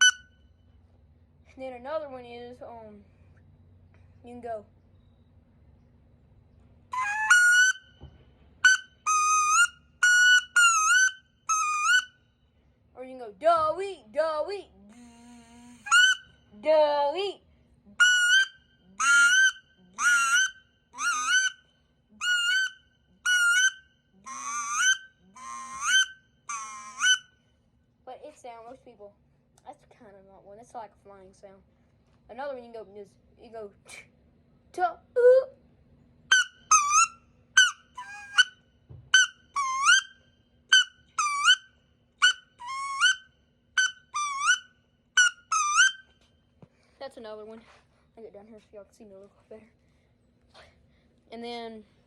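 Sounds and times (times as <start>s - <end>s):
duck call whistled notes: 0.0s - 0.4s, 6.9s - 8.0s, 8.6s - 12.2s, 15.0s - 16.5s, 18.0s - 27.4s, 36.3s - 46.2s.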